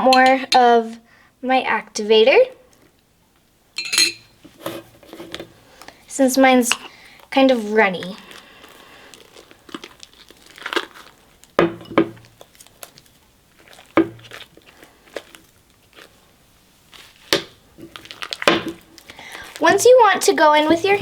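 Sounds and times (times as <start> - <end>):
spoon stirring sticky slime: 11.8 - 16.3, 16.9 - 21.0.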